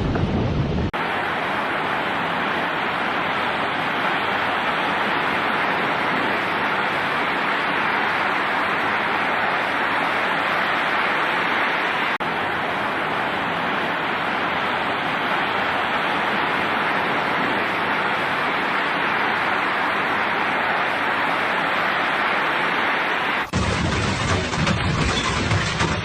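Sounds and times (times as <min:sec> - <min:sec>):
storm roaring: 0:00.0 - 0:26.0.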